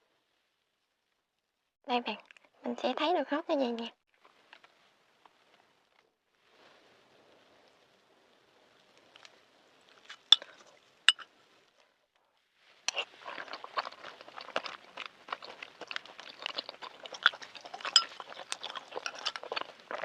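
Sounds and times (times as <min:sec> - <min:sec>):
close-miked chewing: 0:12.9 - 0:20.0
wet mouth sounds: 0:12.9 - 0:20.0.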